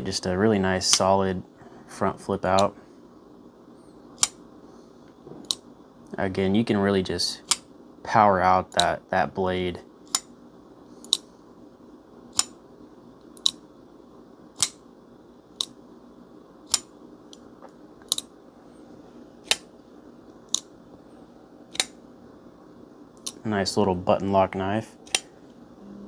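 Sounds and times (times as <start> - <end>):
folding knife clicking: 12.4 - 12.6, 13.4 - 13.6, 14.6 - 14.8, 16.7 - 16.9, 18.1 - 18.3, 21.7 - 22.0, 25.1 - 25.3.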